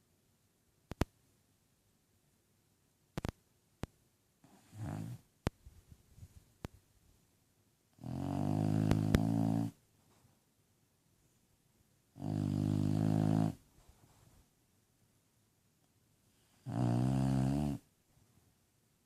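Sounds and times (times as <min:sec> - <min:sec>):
dog snoring: 0:04.4 - 0:05.2, 0:08.0 - 0:09.8, 0:12.2 - 0:13.6, 0:16.4 - 0:17.9.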